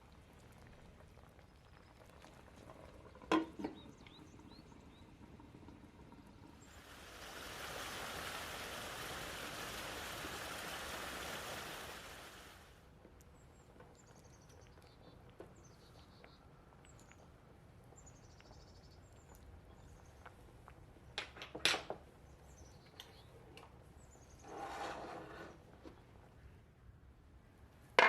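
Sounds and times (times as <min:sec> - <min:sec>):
small bird singing: 0:03.8 - 0:05.1, 0:13.4 - 0:17.3, 0:22.3 - 0:23.4.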